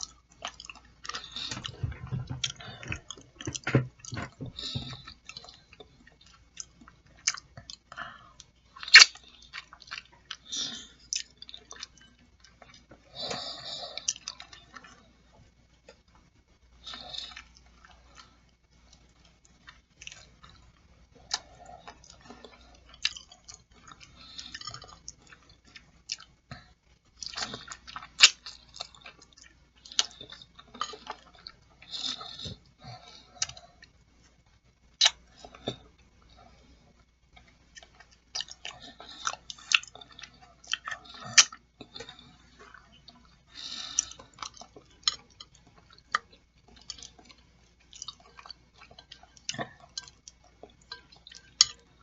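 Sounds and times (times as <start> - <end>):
wet chewing and lip-smacking: 0.0 - 15.1, 15.8 - 36.1, 37.0 - 52.0
sharp mouth clicks: 8.9 - 9.2.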